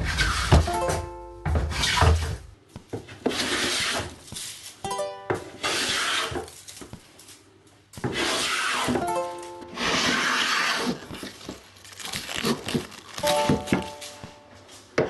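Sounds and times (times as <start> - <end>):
background music with plucked notes: 0.6 - 1.9, 4.8 - 5.6, 9.0 - 10.0, 13.2 - 14.6
hand plane shaving wood: 3.2 - 4.2, 5.6 - 6.6, 8.0 - 9.0, 9.7 - 11.6.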